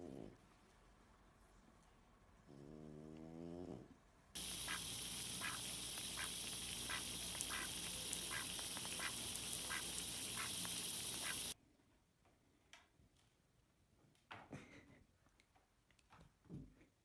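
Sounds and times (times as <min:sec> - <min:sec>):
short repeated animal calls: 0:04.4 - 0:11.6
steady hiss: 0:04.4 - 0:11.6.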